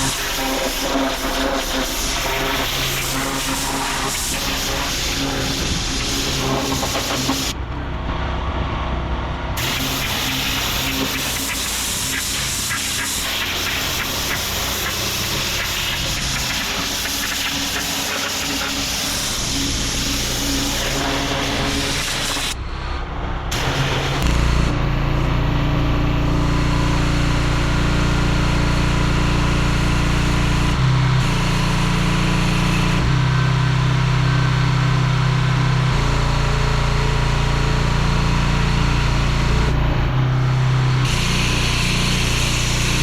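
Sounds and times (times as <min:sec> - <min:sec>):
pressure washer engine running: 0:00.0 - 0:07.6, 0:09.6 - 0:43.0
water spray hissing: 0:09.6 - 0:22.6.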